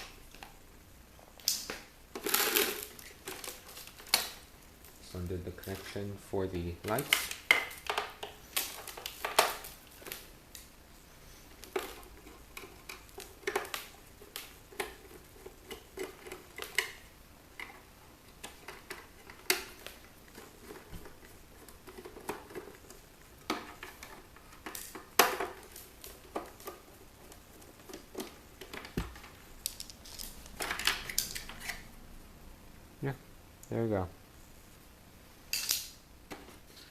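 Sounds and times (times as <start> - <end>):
plastic parts clicking and knocking: 1.4 - 4.5, 6.8 - 10.7, 11.5 - 31.8.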